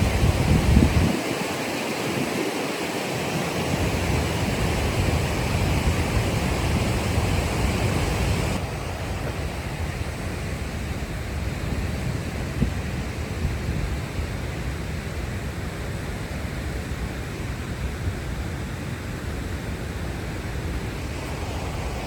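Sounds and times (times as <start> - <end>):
wind buffeting microphone: 0.0 - 15.6
rushing water: 0.0 - 22.0.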